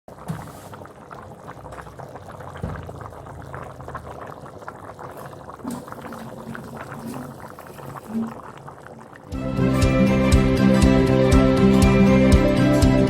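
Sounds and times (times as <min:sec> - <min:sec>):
crackles and pops of cooking: 0:00.1 - 0:09.4
liquid bubbling in a pan: 0:00.1 - 0:09.4.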